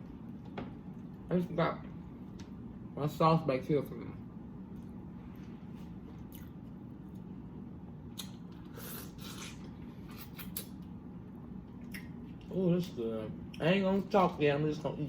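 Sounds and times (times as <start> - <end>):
chewing clicks: 6.2 - 7.3, 8.1 - 8.7
wet mouth smacks: 8.1 - 10.8, 11.8 - 12.2.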